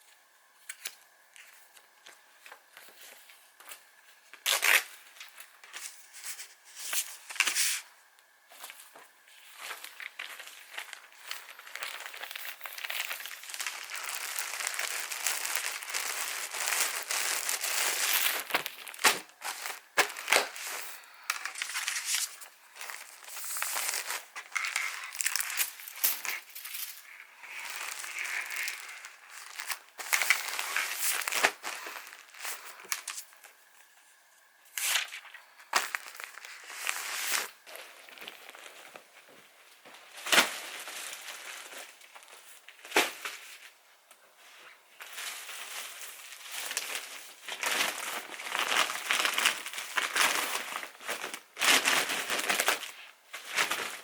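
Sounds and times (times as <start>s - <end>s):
packaging crinkling and rustling: 0.6s - 7.9s, 8.5s - 43.8s, 44.4s - 54.0s
packaging snapping: 10.1s - 33.3s.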